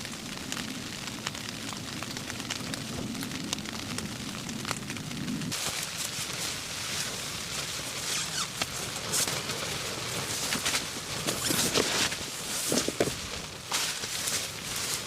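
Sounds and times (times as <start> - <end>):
raindrop ticks: 0.0 - 5.5
rain pattering: 0.0 - 15.0.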